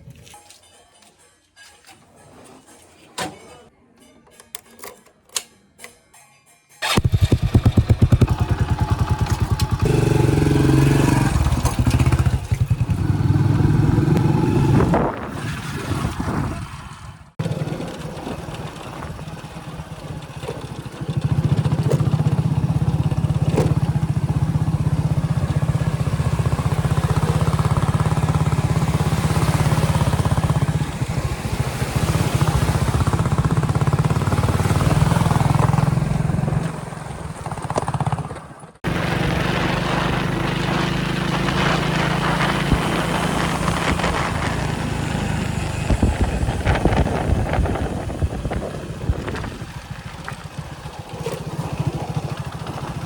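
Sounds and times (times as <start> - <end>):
diesel engine running: 16.6 - 53.0.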